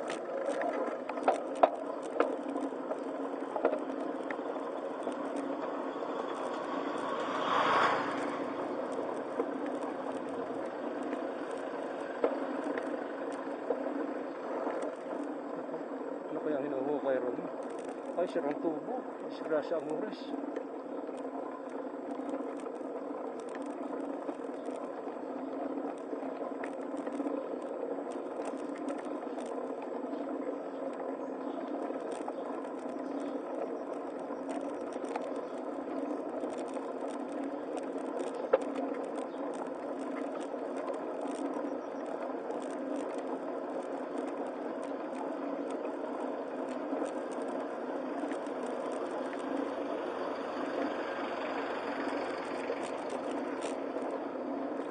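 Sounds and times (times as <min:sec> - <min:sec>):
fine rattling and clicking: 0:08.1 - 0:54.9.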